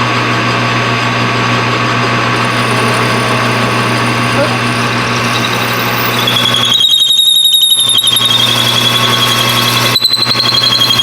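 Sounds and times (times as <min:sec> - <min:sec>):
machine motor hum: 0:02.2 - 0:06.7
metal cutting squeal: 0:02.4 - 0:11.0.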